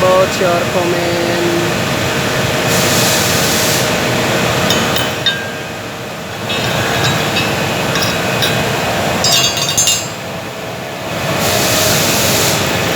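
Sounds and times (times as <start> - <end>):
sharp metallic clinks: 4.7 - 10.5
arc welding crackling hiss: 11.4 - 12.9.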